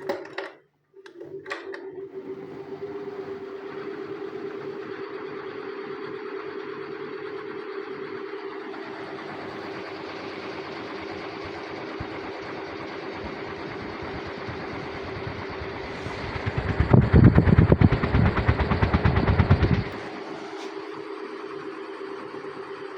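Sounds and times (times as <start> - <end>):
electric fan running: 1.0 - 22.9
loud rapid rattling: 13.2 - 20.0.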